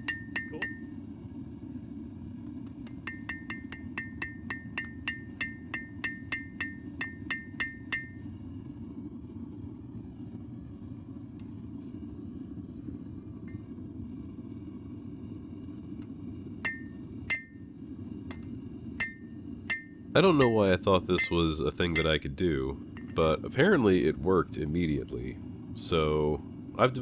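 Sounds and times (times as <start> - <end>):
hammer striking anvil: 0.0 - 0.8, 2.9 - 8.2, 19.0 - 21.4, 22.0 - 22.2
low burner roar: 0.0 - 27.0.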